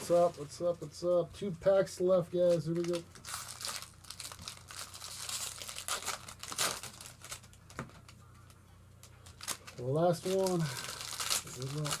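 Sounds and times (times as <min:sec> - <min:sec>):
wrapper tearing and crinkling: 0:02.5 - 0:07.8, 0:09.2 - 0:12.0.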